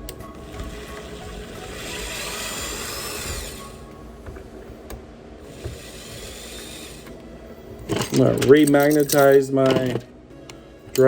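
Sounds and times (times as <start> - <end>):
electric screwdriver whirring: 0.4 - 3.8, 5.5 - 7.2.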